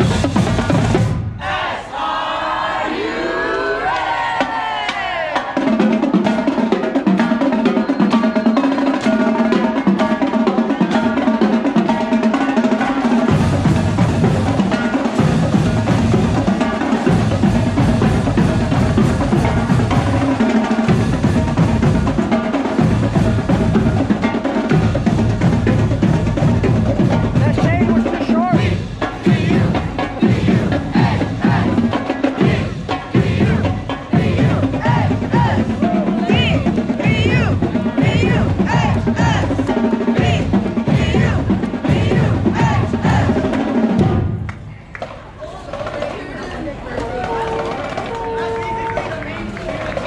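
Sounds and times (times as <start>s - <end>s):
bass drums: 0.0s - 1.5s, 13.2s - 44.5s
rapid snare drum strokes: 0.0s - 1.7s, 4.0s - 46.2s.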